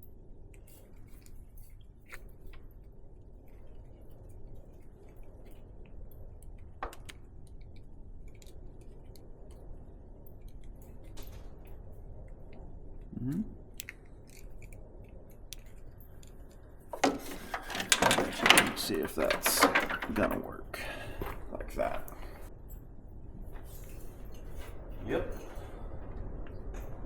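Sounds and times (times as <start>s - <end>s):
short vocal sound: 13.1s - 13.6s.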